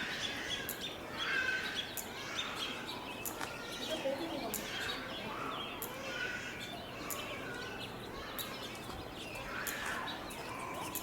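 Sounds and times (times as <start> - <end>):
small birds chirping: 0.0 - 11.0.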